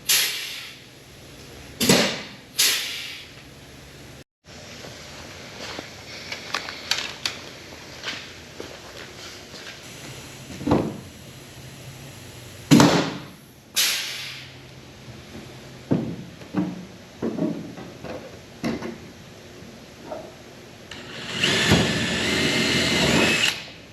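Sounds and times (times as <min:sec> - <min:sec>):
loud hissing bursts: 0:00.1 - 0:00.8, 0:02.6 - 0:03.3, 0:09.8 - 0:14.6.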